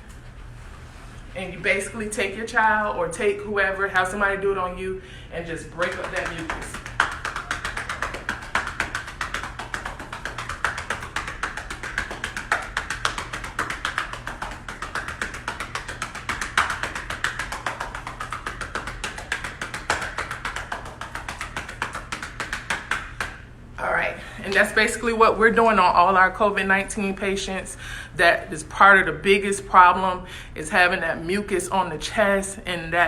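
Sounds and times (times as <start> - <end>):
hands patting on a back: 5.8 - 23.5.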